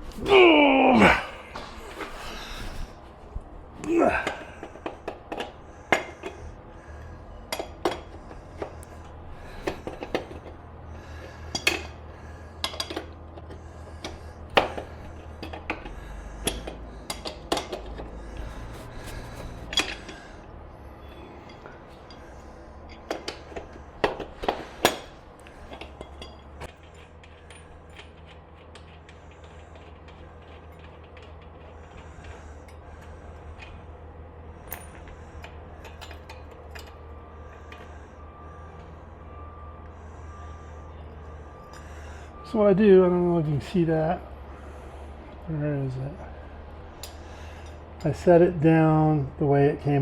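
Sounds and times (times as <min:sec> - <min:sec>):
metal tools clinking: 0:03.8 - 0:38.4, 0:41.0 - 0:44.3.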